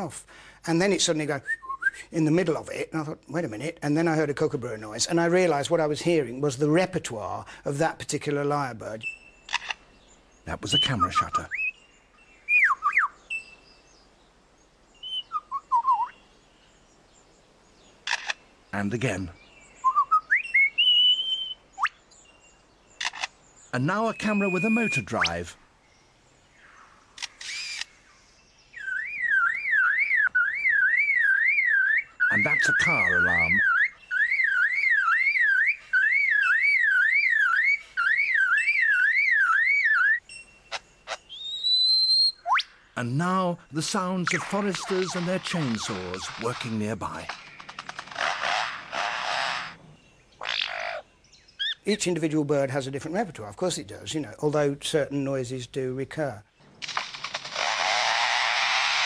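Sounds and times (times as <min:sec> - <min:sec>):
lyrebird whistling: 0:01.4 - 0:02.0, 0:10.7 - 0:11.8, 0:12.5 - 0:13.6, 0:15.0 - 0:16.2, 0:19.8 - 0:22.0, 0:23.9 - 0:25.5, 0:28.7 - 0:42.8, 0:51.6 - 0:51.9
sharp whistled notes: 0:24.1 - 0:25.4
bird mimicking car alarm: 0:28.8 - 0:42.7.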